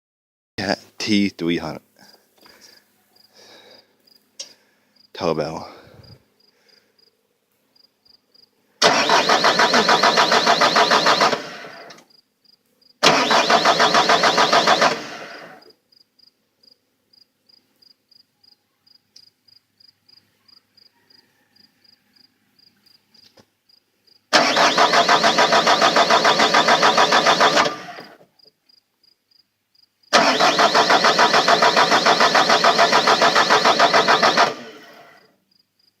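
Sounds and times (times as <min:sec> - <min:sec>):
diesel engine cranking on starter: 0:08.8 - 0:12.1, 0:13.0 - 0:15.7, 0:24.3 - 0:28.2, 0:30.1 - 0:35.3.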